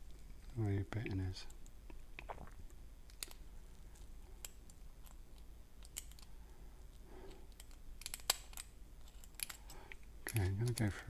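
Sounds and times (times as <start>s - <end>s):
lock pick clicking and scraping: 5.8s - 6.3s, 7.3s - 11.0s.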